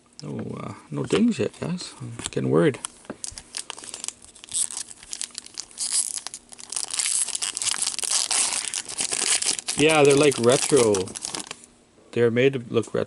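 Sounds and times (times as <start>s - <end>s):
wrapper tearing and crinkling: 3.2s - 11.7s.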